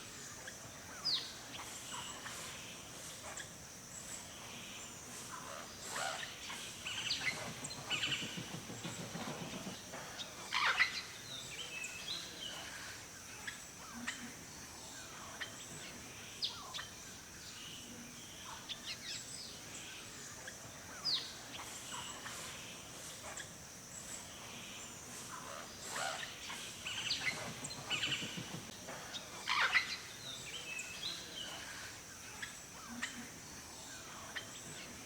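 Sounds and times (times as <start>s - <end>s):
steady high-pitched hiss: 0.0s - 35.0s
birds chirping and calling: 1.0s - 12.9s, 21.0s - 35.0s.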